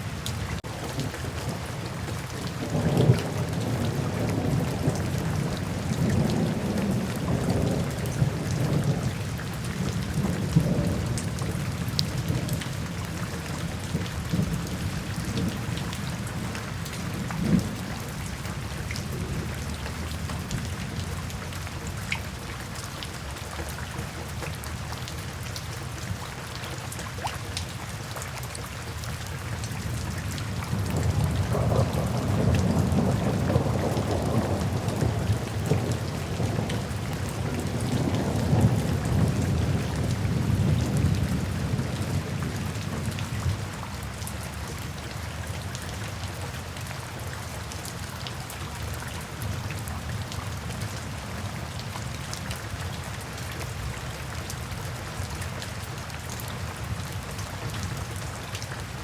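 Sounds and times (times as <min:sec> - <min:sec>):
steady rain hissing: 0:00.0 - 0:59.0
deep roll of thunder: 0:30.7 - 0:43.6.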